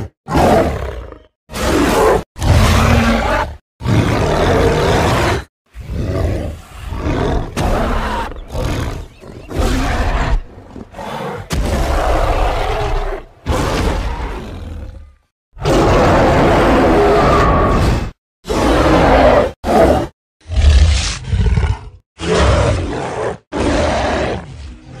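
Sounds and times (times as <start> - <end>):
deep monster roars and grunts: 0.0 - 25.0.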